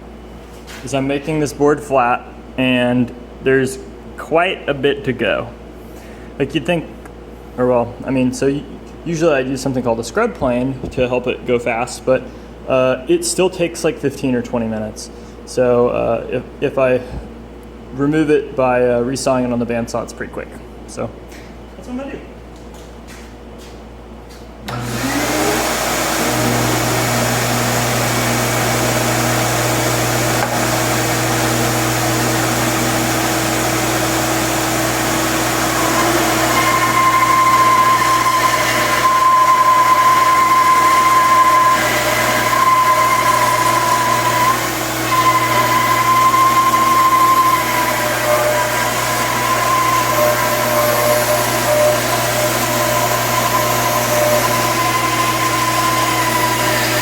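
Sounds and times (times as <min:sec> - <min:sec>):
bandsaw blade whining through wood: 0:24.7 - 0:57.0
bandsaw running: 0:24.7 - 0:57.0.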